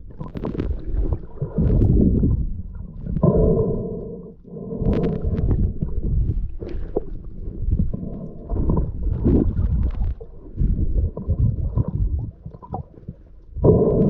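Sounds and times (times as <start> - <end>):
faint steady hum: 0.0 - 14.0
underwater rumbling and gurgling: 0.0 - 14.0.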